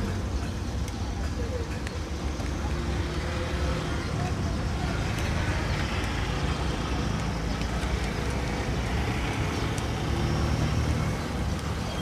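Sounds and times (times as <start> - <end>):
road traffic rumble: 0.0 - 12.0
faint clicks: 0.7 - 1.0, 5.1 - 10.1.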